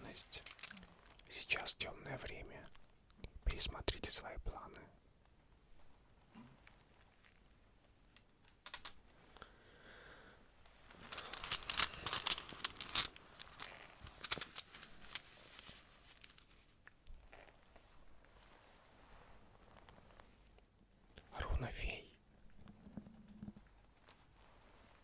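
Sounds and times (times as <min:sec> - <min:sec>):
crinkly rustling: 0:00.0 - 0:01.4, 0:05.3 - 0:09.4, 0:10.6 - 0:20.6, 0:23.6 - 0:25.0.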